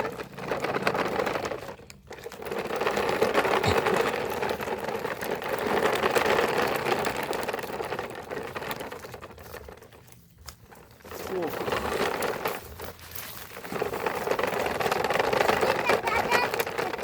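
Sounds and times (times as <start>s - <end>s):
toy motor and gears whirring: 1.4s - 17.0s
fast ticking rattle: 11.2s - 17.0s.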